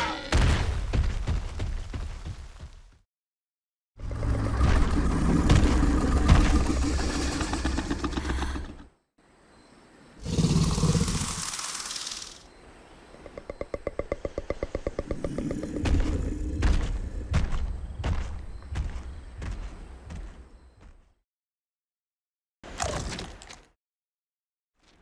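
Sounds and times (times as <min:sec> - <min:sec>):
deep rattly creature growl: 0:04.0 - 0:09.0, 0:10.2 - 0:12.4, 0:14.1 - 0:17.5
harsh creature hiss: 0:10.2 - 0:12.4.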